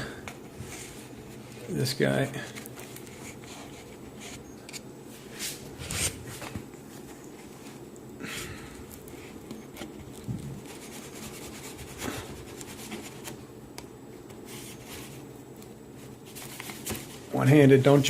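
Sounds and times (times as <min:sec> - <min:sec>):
steady low hum: 0:00.0 - 0:18.0
cardboard scratching and rubbing: 0:00.6 - 0:06.6, 0:09.2 - 0:13.4, 0:14.4 - 0:15.3, 0:16.0 - 0:17.4.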